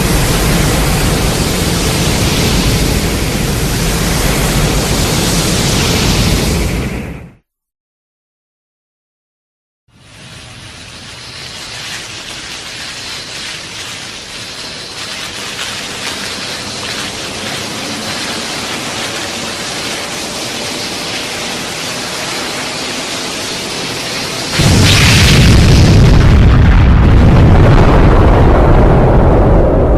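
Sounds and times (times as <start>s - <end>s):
rushing hiss: 0.0s - 7.1s, 9.9s - 26.7s
deep explosion boom: 24.6s - 29.9s.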